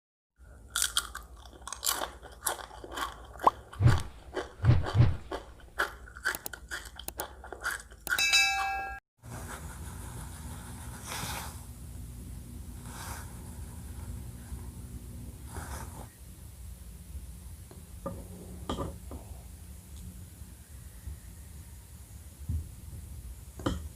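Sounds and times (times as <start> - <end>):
chewing and crunching food: 0.4 - 8.2
steady low background: 3.6 - 6.1
metallic ding: 8.1 - 9.0.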